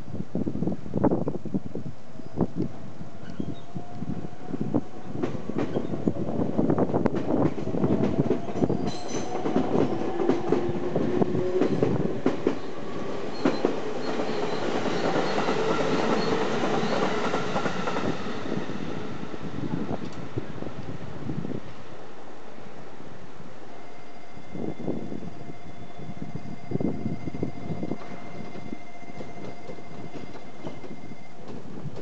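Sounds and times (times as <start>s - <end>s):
train rumble: 1.5s - 32.0s
train wheels clicking over rails: 5.0s - 19.2s, 27.8s - 32.0s.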